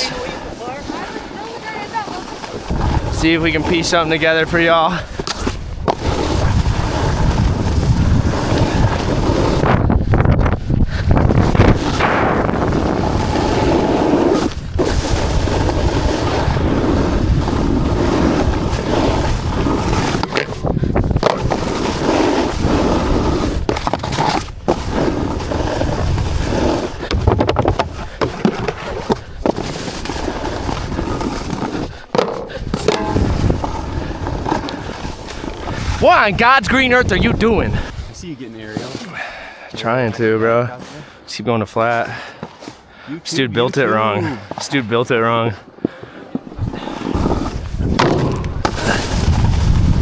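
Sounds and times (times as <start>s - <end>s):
snowboard scraping over snow: 0.0s - 44.0s, 46.2s - 50.0s
wind on microphone: 2.6s - 3.8s, 5.0s - 23.9s, 30.3s - 38.2s, 46.5s - 50.0s.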